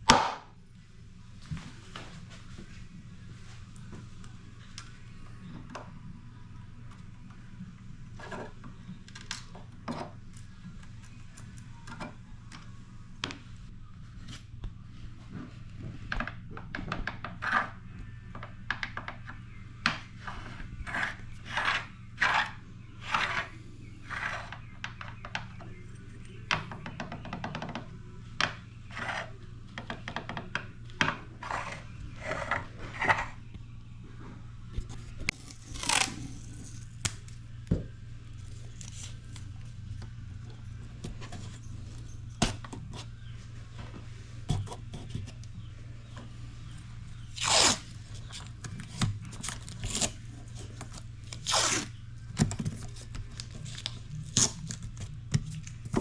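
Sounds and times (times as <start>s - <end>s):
hand tools scraping wood: 20.2s - 24.7s, 31.4s - 33.4s.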